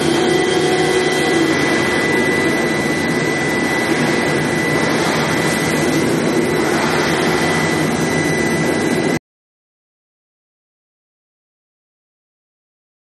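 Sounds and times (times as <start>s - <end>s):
high steady whine: 0.0s - 9.2s
loud machine noise: 0.0s - 9.2s.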